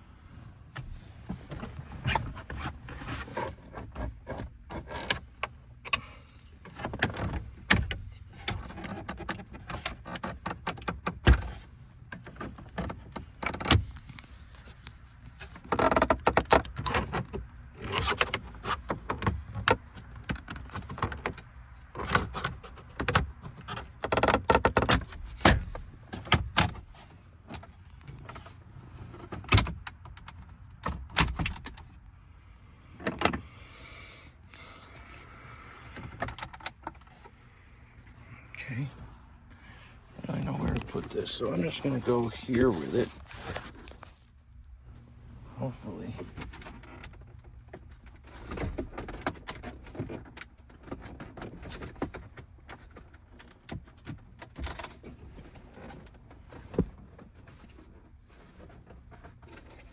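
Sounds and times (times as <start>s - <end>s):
scraping and handling noise: 0.2s - 32.0s, 34.3s - 59.9s
plastic trim clicking and rattling: 2.2s - 26.9s.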